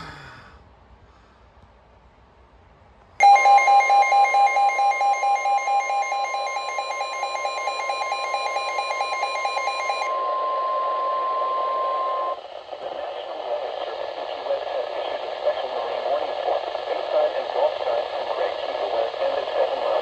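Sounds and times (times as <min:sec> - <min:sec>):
rapid pulsing electronic beep: 0:03.2 - 0:12.4
steady alert tone: 0:03.2 - 0:12.4
radio hiss: 0:10.1 - 0:20.0.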